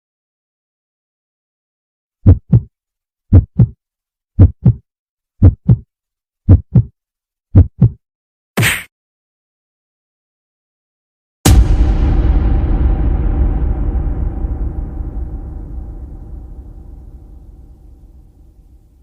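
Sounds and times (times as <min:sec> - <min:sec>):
heartbeat double thumps: 0:02.2 - 0:02.7, 0:03.3 - 0:03.8, 0:04.4 - 0:04.8, 0:05.4 - 0:05.8, 0:06.5 - 0:06.9, 0:07.6 - 0:08.0.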